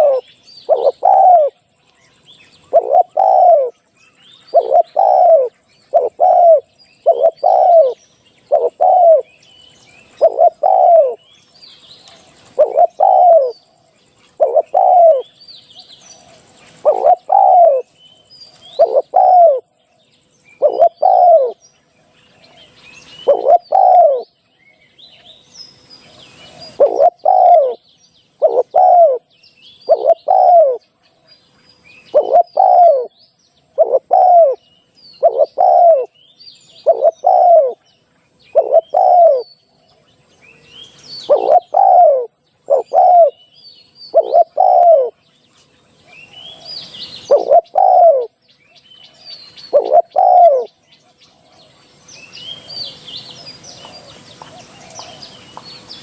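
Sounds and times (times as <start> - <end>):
dove cooing: 0.0 - 1.7, 2.5 - 3.8, 4.4 - 9.4, 10.0 - 11.4, 12.4 - 13.7, 14.3 - 15.3, 16.1 - 17.9, 18.6 - 19.7, 20.6 - 21.6, 22.6 - 24.4, 26.4 - 27.8, 28.4 - 30.8, 32.0 - 34.6, 35.2 - 37.8, 38.5 - 39.5, 41.1 - 43.4, 44.1 - 45.2, 46.0 - 48.4, 49.4 - 51.2, 53.4 - 55.6
small birds chirping: 0.0 - 56.0.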